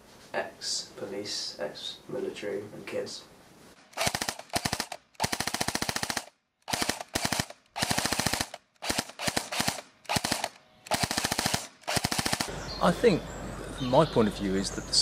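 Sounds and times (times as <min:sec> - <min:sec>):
airsoft guns firing bursts: 0:03.9 - 0:12.5.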